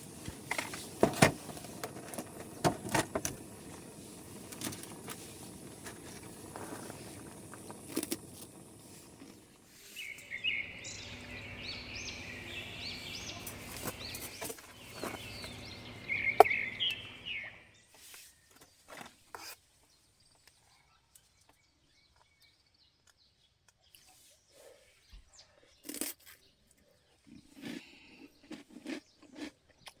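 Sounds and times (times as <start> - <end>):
birds chirping: 0.0 - 19.0
outdoor background hiss: 0.0 - 20.0.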